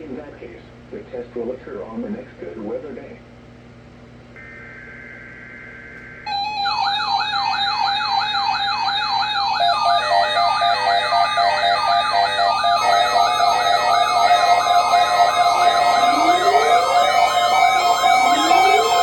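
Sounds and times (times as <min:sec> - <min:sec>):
steady warning tone: 0:04.4 - 0:19.0
wailing siren sweep: 0:04.4 - 0:19.0.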